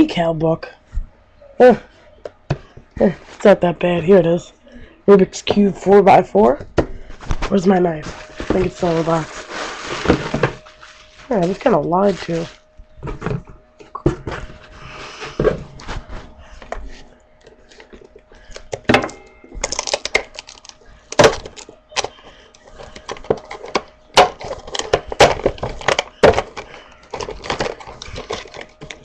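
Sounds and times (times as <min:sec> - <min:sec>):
packaging rustling: 0:07.0 - 0:13.6, 0:14.2 - 0:29.0
packaging cracking and clicking: 0:19.6 - 0:29.0.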